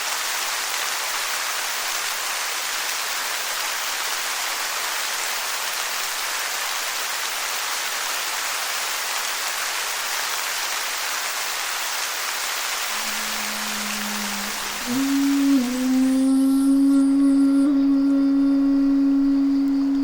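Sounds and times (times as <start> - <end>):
steady rain: 0.0 - 20.0
low held tone: 12.9 - 20.0.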